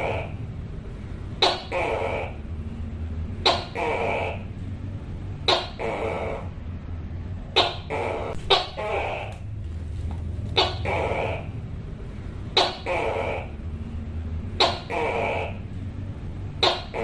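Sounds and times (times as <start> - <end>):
gecko calling: 0.0 - 0.4, 1.4 - 2.5, 3.4 - 4.6, 5.4 - 6.6, 7.5 - 9.6, 10.5 - 11.6, 12.5 - 13.6, 14.5 - 15.7, 16.6 - 17.0.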